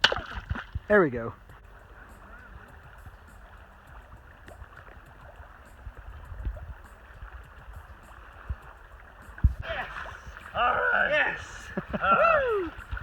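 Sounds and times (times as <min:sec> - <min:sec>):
low rumbling thumps: 0:04.0 - 0:09.6
river water rushing: 0:06.9 - 0:13.0.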